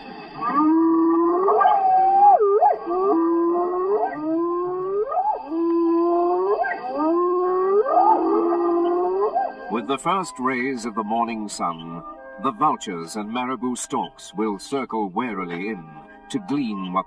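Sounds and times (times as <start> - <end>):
hyenas whooping: 0.4 - 10.6.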